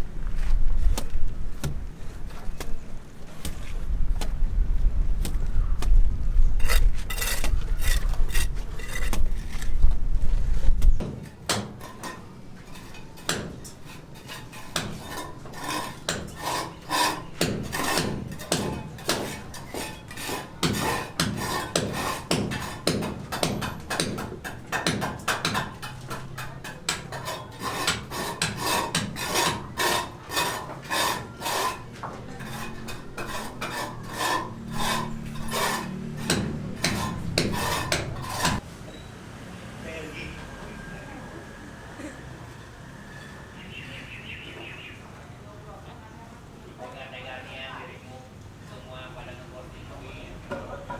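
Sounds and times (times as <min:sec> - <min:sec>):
hand tool scraping: 0:06.6 - 0:09.9, 0:10.6 - 0:38.6.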